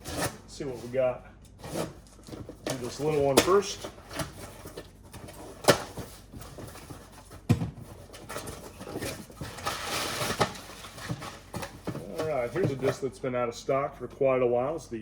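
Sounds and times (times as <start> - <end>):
cardboard rustling: 0.0 - 13.2
knocks on cardboard box: 7.4 - 7.9.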